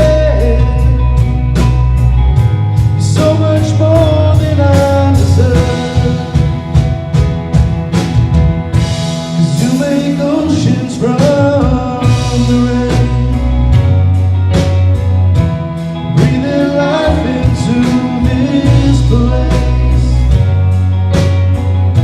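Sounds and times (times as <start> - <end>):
person singing: 0.0 - 1.4, 2.8 - 6.9, 9.3 - 14.0, 16.0 - 20.7
worship band playing: 0.0 - 22.0.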